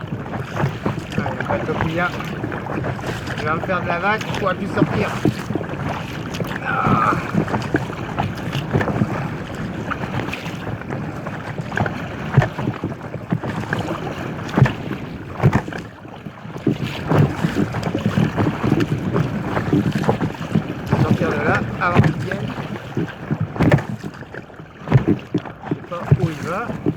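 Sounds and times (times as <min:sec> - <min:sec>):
water lapping against kayak: 0:00.0 - 0:26.9
wind buffeting microphone: 0:00.0 - 0:26.9.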